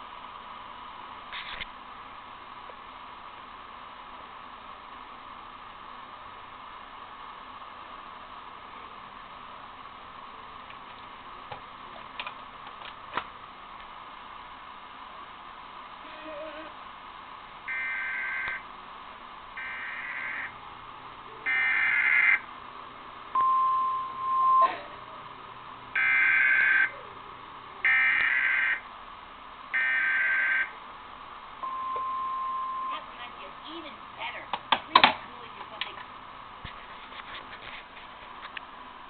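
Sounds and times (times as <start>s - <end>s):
steady static hiss: 0.0s - 39.0s
screeching digital data bursts: 19.6s - 20.5s
steady single tone: 23.3s - 24.8s, 31.6s - 33.0s.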